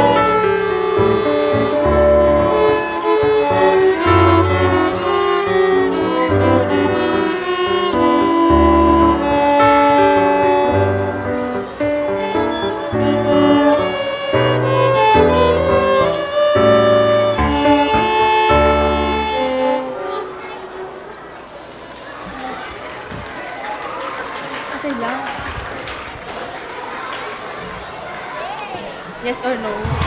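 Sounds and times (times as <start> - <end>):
piano accompaniment: 0.0 - 21.2
violin melody: 0.0 - 21.2.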